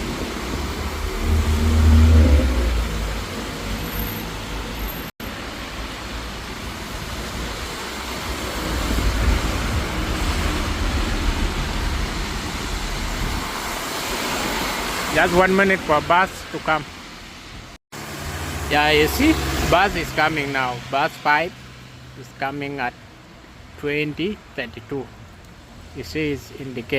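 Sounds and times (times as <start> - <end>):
vehicle engine rumble: 0.0 - 15.0
rain hiss: 0.0 - 19.8
traffic passing on wet street: 0.0 - 26.9.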